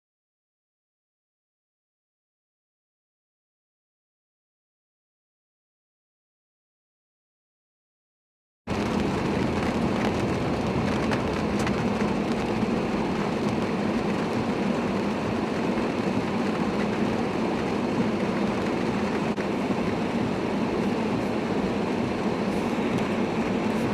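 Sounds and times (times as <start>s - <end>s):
strong storm wind roaring: 8.7s - 23.9s.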